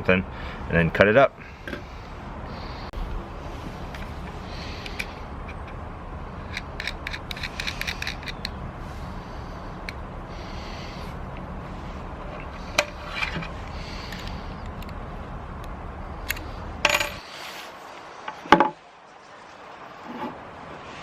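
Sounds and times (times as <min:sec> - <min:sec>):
low background rumble: 0:00.0 - 0:17.4.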